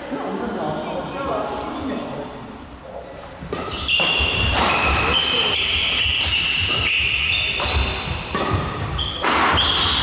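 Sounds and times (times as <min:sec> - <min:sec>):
rackets hitting shuttlecock: 0:03.4 - 0:10.0
shoes squeaking on floor: 0:03.6 - 0:10.0.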